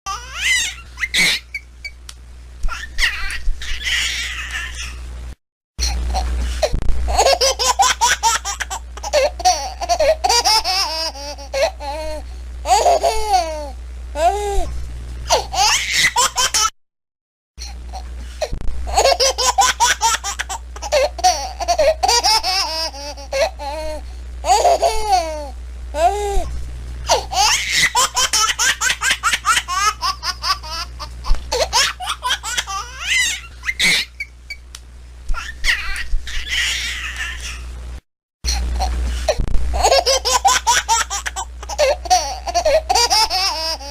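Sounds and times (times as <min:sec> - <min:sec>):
baby laughing and squealing: 0:00.1 - 0:01.7, 0:02.7 - 0:05.0, 0:07.1 - 0:14.3, 0:15.3 - 0:16.7, 0:18.9 - 0:26.1, 0:27.1 - 0:34.6, 0:35.3 - 0:37.7, 0:39.8 - 0:43.9.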